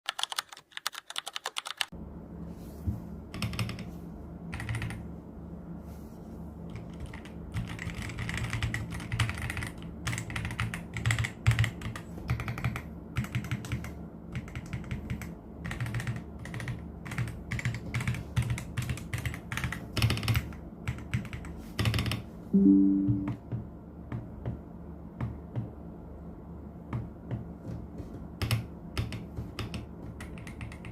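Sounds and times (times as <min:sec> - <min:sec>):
mechanical keyboard typing: 0:00.1 - 0:01.9, 0:03.3 - 0:03.9, 0:04.5 - 0:05.0, 0:06.7 - 0:23.4, 0:28.4 - 0:30.9
steady low hum: 0:01.9 - 0:12.1.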